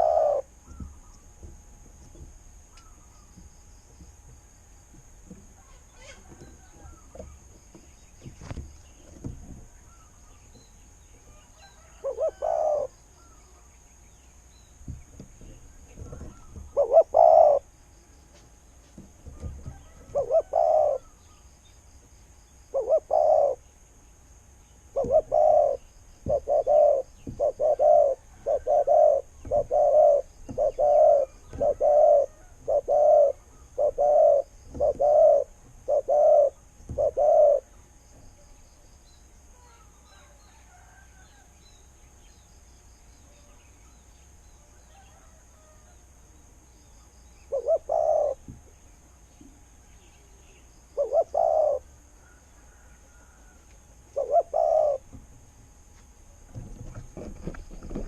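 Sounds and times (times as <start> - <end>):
dove cooing: 0.0 - 1.0, 11.6 - 13.4, 15.9 - 17.7, 19.4 - 21.2, 22.7 - 23.6, 24.9 - 37.7, 47.5 - 48.4, 51.0 - 53.4, 54.1 - 55.1.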